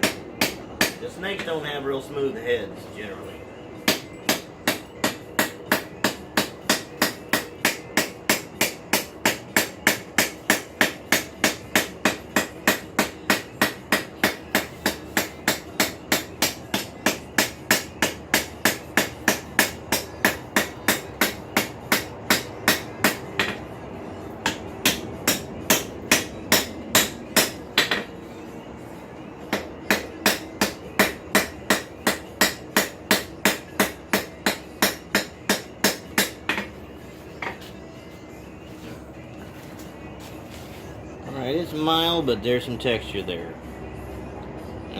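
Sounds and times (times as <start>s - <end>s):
hammer striking steel on anvil: 0.0s - 1.6s, 3.8s - 23.6s, 24.4s - 28.1s, 29.5s - 36.7s.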